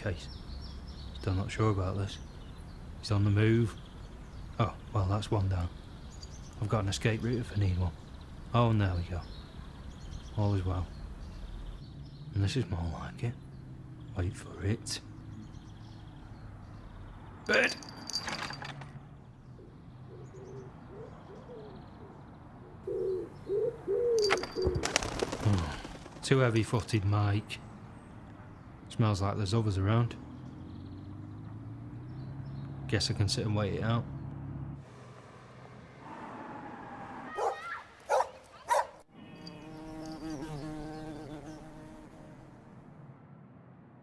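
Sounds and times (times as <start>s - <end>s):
pigeon cooing: 19.6s - 26.0s
dog barking: 37.3s - 39.0s
steady insect buzz: 39.2s - 42.6s.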